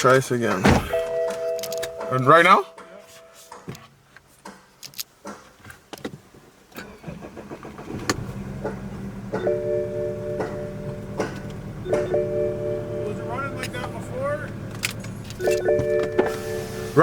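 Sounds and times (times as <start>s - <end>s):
car engine idling rough: 7.0s - 17.0s.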